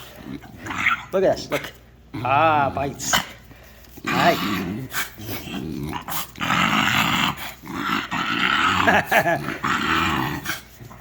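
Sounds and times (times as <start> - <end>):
dog growling in play: 0.0 - 1.1, 4.0 - 11.0.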